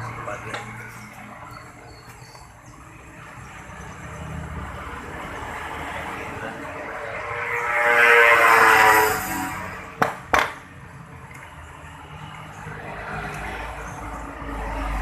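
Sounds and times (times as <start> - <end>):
vehicle engine passing by: 3.2 - 10.0, 12.0 - 15.0.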